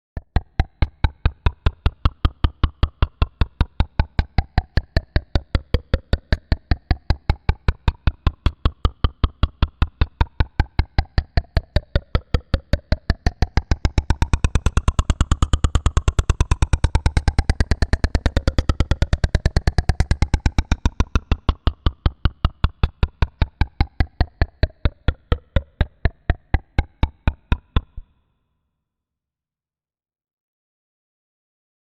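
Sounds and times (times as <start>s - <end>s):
electronic ticking pulse: 0.6s - 27.2s.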